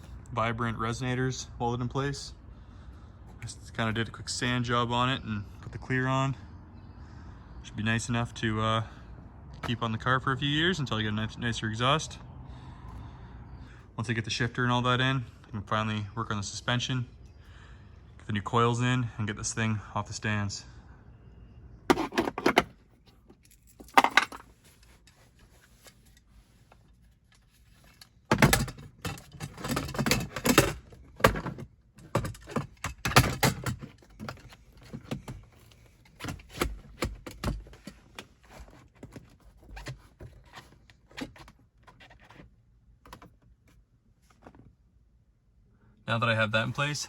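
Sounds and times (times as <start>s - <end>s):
metal tools clinking and rattling: 23.4s - 25.2s, 27.8s - 35.2s.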